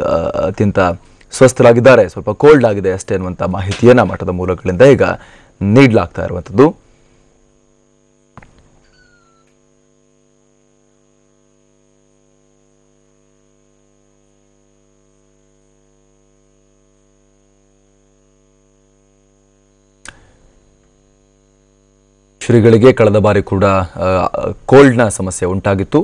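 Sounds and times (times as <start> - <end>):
faint electrical hum: 0.0 - 26.0
short sharp click: 20.0 - 20.3.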